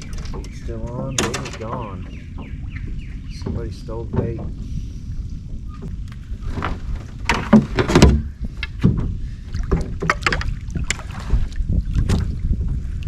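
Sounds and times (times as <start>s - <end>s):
water splashing around rowboat: 0.0s - 13.0s
sharp splashes and knocks: 6.6s - 12.8s.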